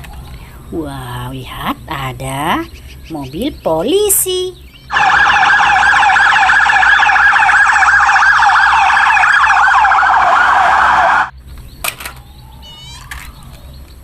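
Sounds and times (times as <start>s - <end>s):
police siren wailing: 4.9s - 11.3s, 12.2s - 13.6s.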